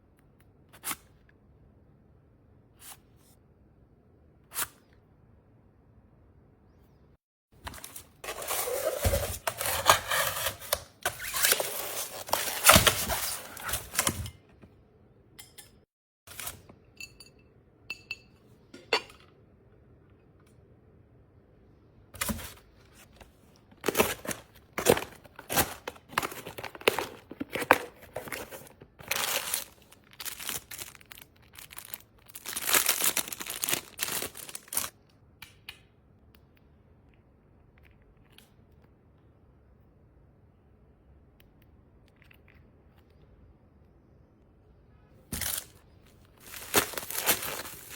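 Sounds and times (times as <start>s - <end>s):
plastic packaging crinkling and tearing: 7.7s - 14.2s, 23.8s - 34.9s, 45.3s - 47.9s
items clicking and tapping: 23.7s - 30.9s.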